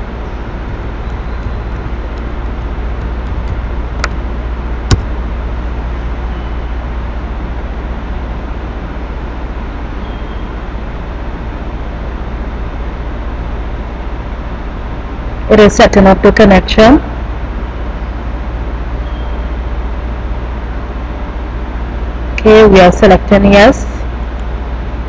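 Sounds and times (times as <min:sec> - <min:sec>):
microphone hum and hiss: 0:00.0 - 0:06.2.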